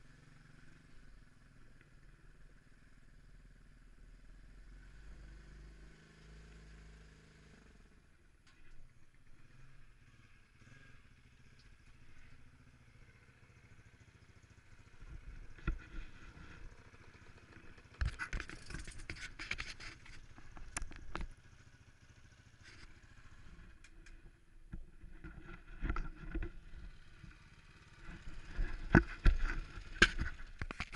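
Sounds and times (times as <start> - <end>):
motorcycle engine running: 0.0 - 30.9.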